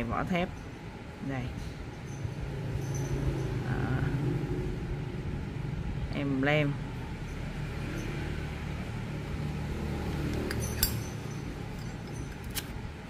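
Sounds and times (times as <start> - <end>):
metal lighters clinking: 10.3 - 12.9.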